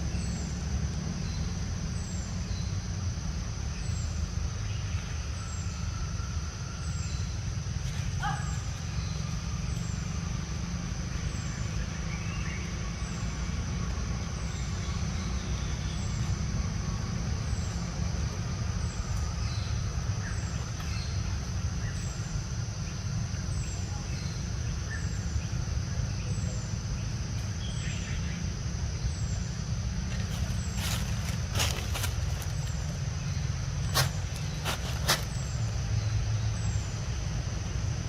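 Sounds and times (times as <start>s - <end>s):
constant high-pitched tone: 0.0s - 38.0s
steady low rumble: 8.8s - 38.0s.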